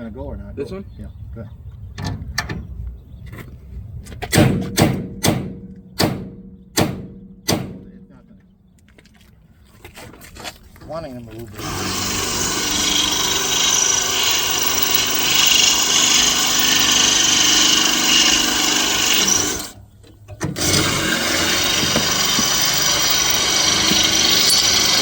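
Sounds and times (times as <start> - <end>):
electric drill running under load: 11.6 - 19.8, 20.6 - 25.0.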